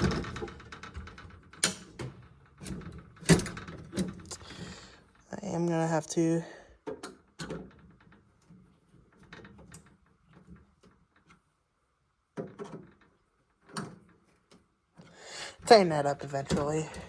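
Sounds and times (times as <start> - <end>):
fire alarm pull station rattling: 0.0 - 4.9, 15.6 - 17.0.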